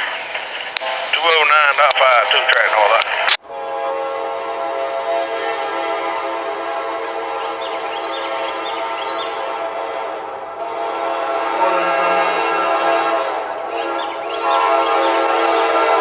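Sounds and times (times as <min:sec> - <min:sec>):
locomotive air horn blast: 0:03.4 - 0:16.0.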